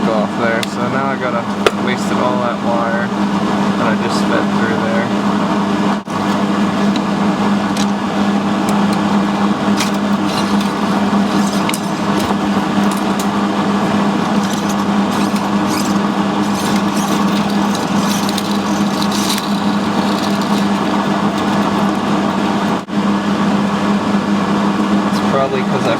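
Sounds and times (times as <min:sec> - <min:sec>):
machine hum with low tone: 0:05.0 - 0:25.3
metallic rattles: 0:06.1 - 0:22.9.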